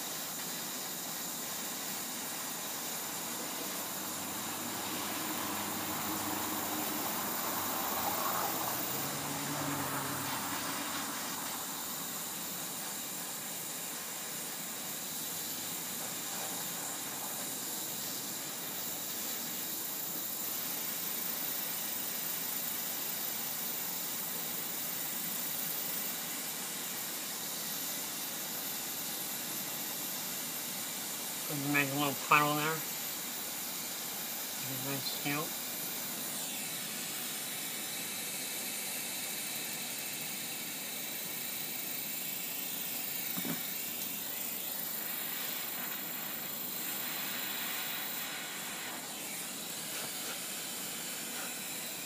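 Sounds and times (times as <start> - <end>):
torch flame hissing: 0.0 - 52.0.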